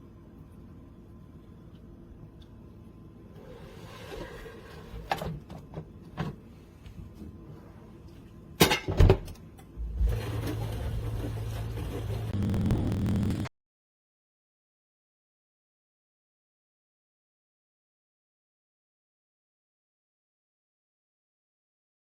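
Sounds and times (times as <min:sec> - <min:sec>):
dishwasher motor humming: 0:09.8 - 0:13.5.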